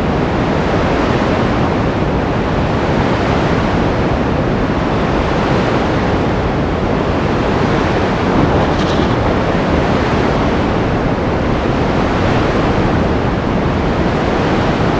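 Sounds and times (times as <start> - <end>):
heavy waves crashing: 6.9 - 14.9
wind rushing: 7.2 - 14.9.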